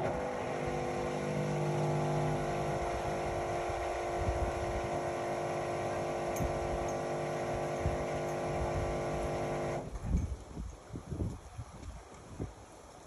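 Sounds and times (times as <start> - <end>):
washing machine motor humming: 0.0 - 9.8.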